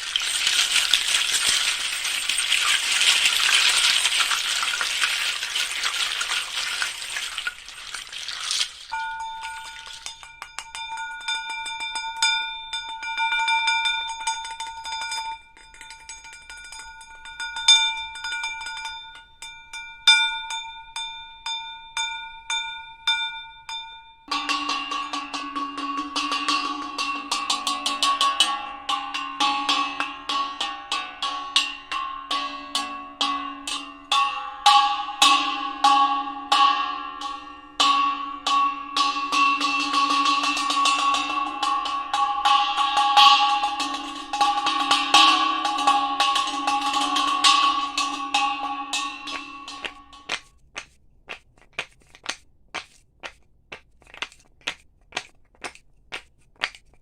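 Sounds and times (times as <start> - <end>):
bells ringing: 0.0 - 16.4.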